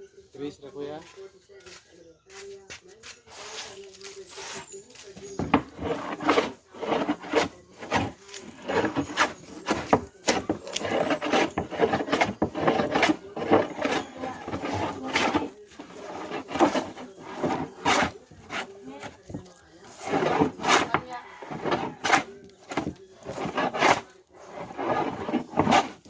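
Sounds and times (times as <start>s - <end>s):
hand plane shaving wood: 5.4s - 26.0s.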